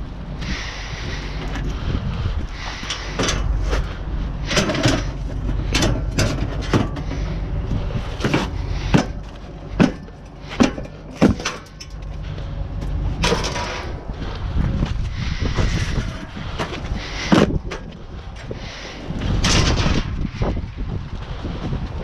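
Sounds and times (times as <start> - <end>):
wind rumbling on microphone: 0.0 - 22.0
sharp knocks and clatter: 2.9 - 7.4, 8.0 - 12.2.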